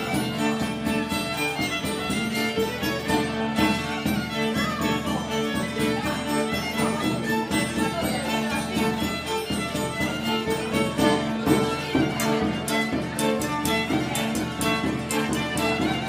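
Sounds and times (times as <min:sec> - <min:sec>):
instrumental music with steady pulse: 0:00.0 - 0:16.0.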